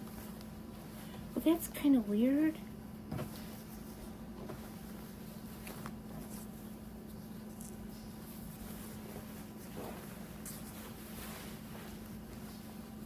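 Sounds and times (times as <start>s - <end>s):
steady low hum: 0.0s - 13.0s
garment and packaging rustling: 3.1s - 13.0s.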